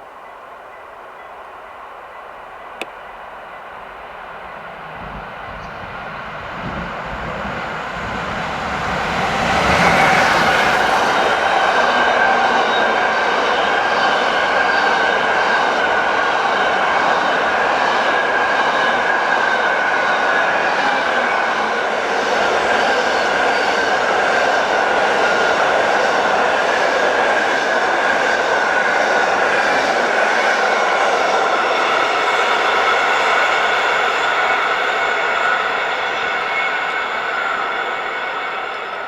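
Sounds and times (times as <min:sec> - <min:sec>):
high ringing tone: 0:03.5 - 0:12.1, 0:30.8 - 0:39.0
wagon wheels rushing on rails: 0:04.0 - 0:12.2, 0:30.6 - 0:39.0.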